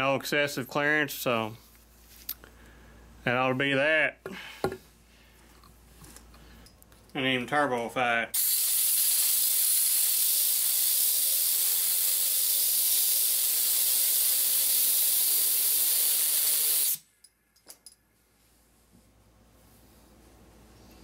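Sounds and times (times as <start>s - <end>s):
compressed air hissing: 8.4s - 17.0s.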